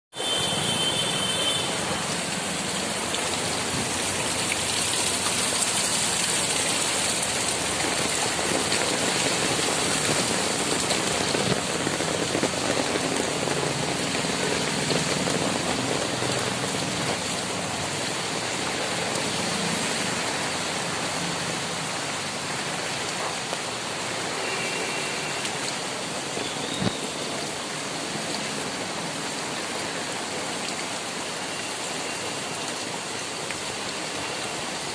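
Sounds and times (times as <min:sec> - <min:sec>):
heavy rain pouring: 0:00.2 - 0:34.9.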